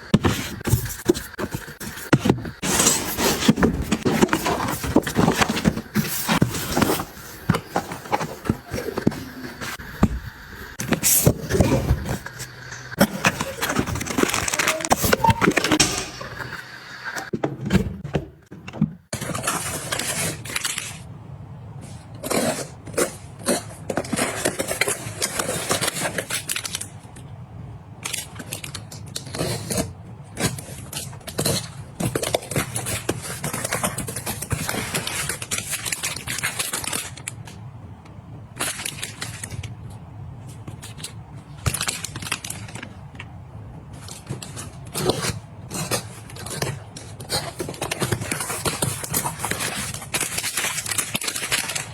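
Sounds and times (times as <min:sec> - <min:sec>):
objects being handled: 0:00.0 - 0:20.6.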